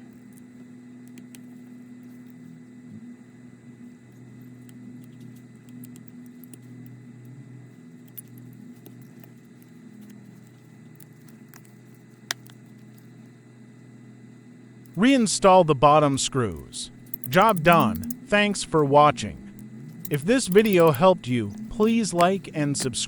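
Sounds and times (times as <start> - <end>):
steady low hum: 0.0 - 23.0
small tools clicking and tapping: 4.6 - 7.0, 8.0 - 13.1, 17.0 - 18.3, 19.4 - 23.0.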